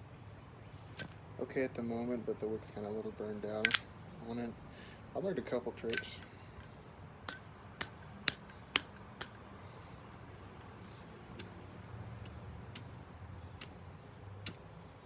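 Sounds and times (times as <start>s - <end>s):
crickets chirping: 0.0s - 15.0s
lighter metallic clicks: 3.6s - 3.9s.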